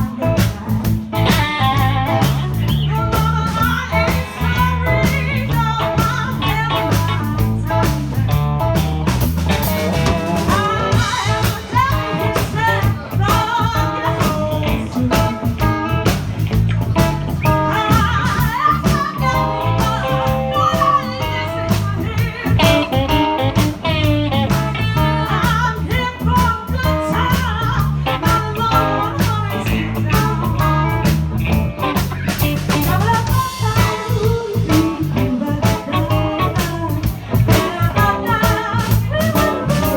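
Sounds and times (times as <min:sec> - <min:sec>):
guitar: 0:00.0 - 0:39.9
live blues band playing: 0:00.0 - 0:39.9
person singing: 0:10.2 - 0:16.1, 0:17.0 - 0:31.2, 0:31.8 - 0:39.9.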